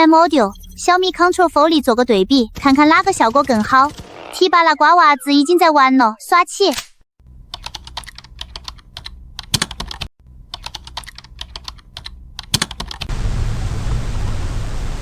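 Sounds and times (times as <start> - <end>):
keyboard typing: 7.5 - 13.1.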